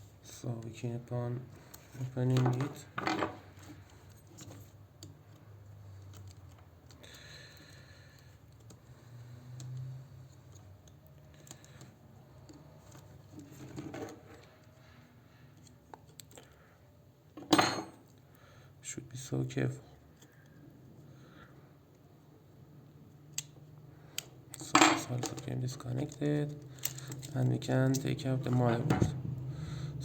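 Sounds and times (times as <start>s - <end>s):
tools clicking and scraping: 23.3s - 29.2s.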